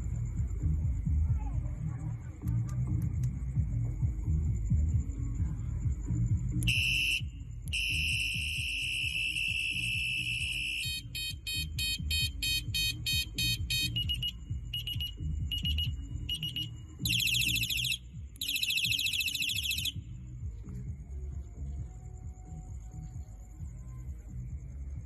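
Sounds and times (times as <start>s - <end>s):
background music: 0.0s - 25.0s
electronic bicycle horn beeping: 6.6s - 20.0s.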